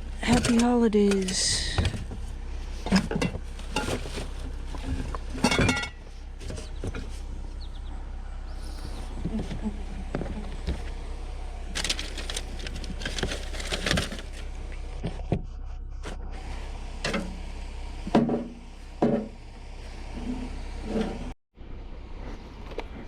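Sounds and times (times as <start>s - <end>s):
steady low hum: 0.0s - 23.0s
knocks and clatter of items: 2.8s - 7.2s, 11.8s - 14.4s.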